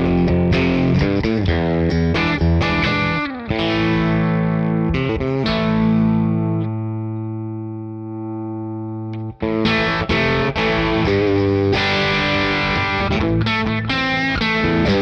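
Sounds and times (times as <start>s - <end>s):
overdriven electric guitar chords: 0.0s - 15.0s.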